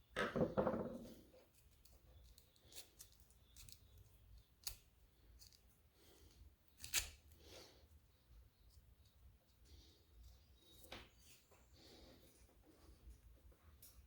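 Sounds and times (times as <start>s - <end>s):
small metal parts clicking: 1.6s - 5.6s.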